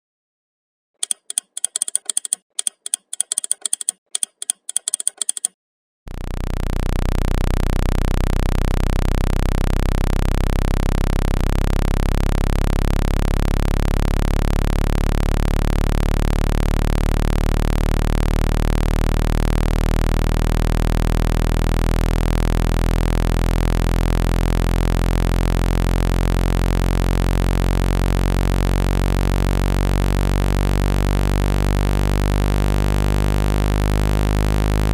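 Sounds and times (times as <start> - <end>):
short clicks: 1.0 - 5.6
low electronic tone: 6.1 - 34.9.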